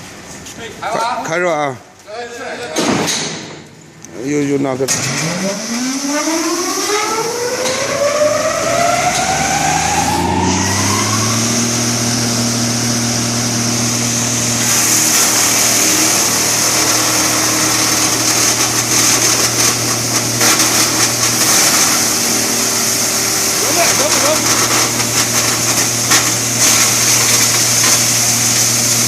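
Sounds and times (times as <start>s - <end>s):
wood crusher motor whining and humming: 4.9s - 29.0s
rushing hiss: 13.9s - 29.0s.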